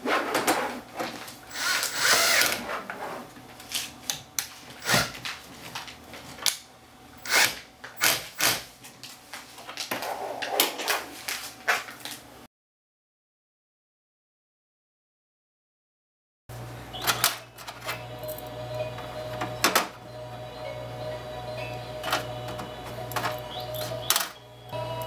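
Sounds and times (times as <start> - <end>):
power drill running: 1.5 - 2.6, 7.2 - 7.6, 17.9 - 25.0.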